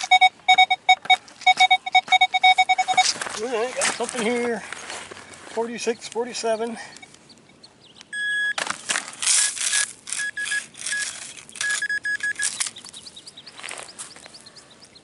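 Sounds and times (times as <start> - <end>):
metal detector beeping: 0.0 - 3.2, 8.1 - 8.6, 9.3 - 12.7
soil digging and scraping: 2.3 - 6.2, 8.6 - 14.5.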